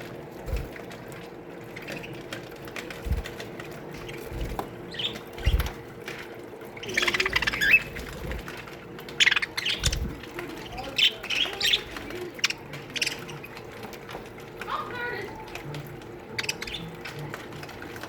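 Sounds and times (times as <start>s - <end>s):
budgerigars chattering and chirping: 2.9s - 5.7s, 6.7s - 14.1s, 14.9s - 18.0s.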